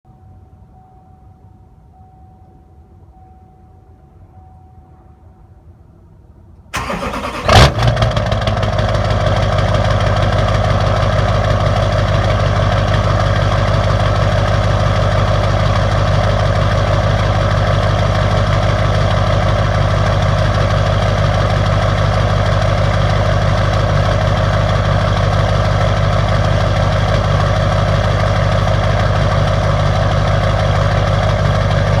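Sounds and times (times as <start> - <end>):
diesel engine cranking and idling: 6.8 - 32.0.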